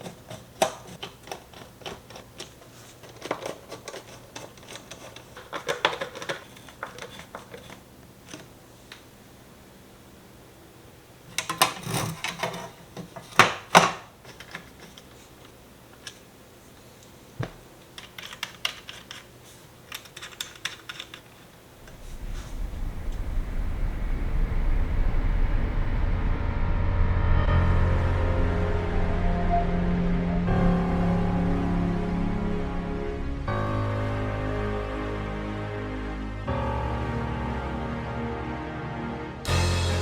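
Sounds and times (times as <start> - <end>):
computer case parts clicking and rattling: 0.0 - 9.0, 11.3 - 16.3, 17.8 - 21.6.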